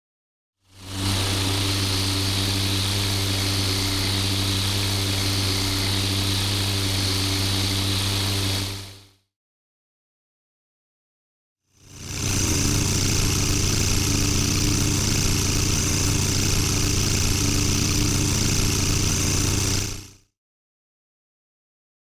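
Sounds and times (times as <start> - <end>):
propeller aircraft engine droning: 0.8 - 8.8, 12.0 - 20.1.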